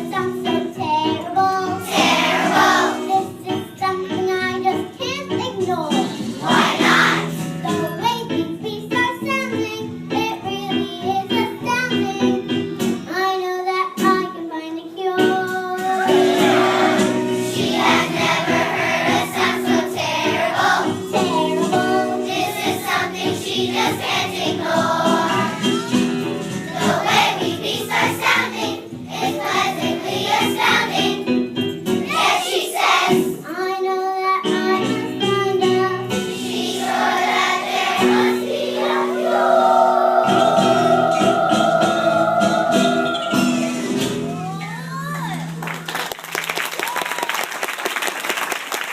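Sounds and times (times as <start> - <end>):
child singing: 0.0 - 6.1, 7.6 - 16.4, 32.1 - 36.2
children's song singing: 0.0 - 44.1
instrumental accompaniment: 15.2 - 33.5, 34.5 - 44.9.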